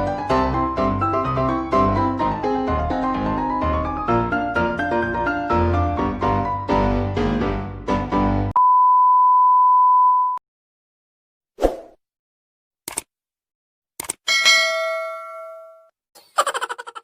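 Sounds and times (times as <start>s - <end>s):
piano-like keyboard music: 0.0s - 8.6s.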